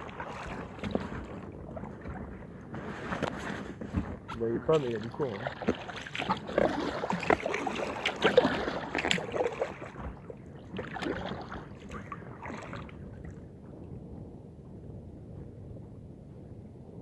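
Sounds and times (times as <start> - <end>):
paddle splashing in water: 0.0 - 13.5.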